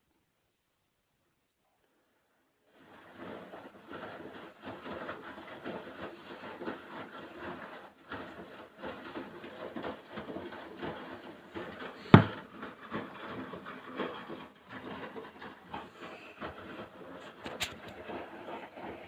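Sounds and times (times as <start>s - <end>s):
laundry and water sloshing: 2.7s - 19.0s
washing machine drum tumbling: 2.8s - 19.0s
sharp knock: 12.1s - 12.4s.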